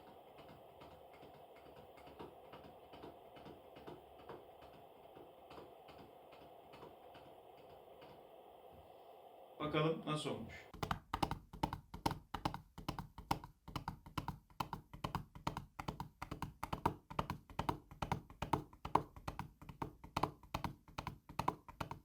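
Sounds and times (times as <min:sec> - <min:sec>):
matchbox tapping hoof rhythm: 0:10.7 - 0:22.0.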